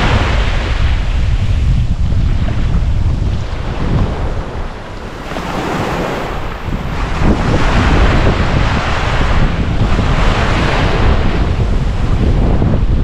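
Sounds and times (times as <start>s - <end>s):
ocean surf breaking on beach: 0.0s - 13.0s
wind buffeting microphone: 0.0s - 13.0s.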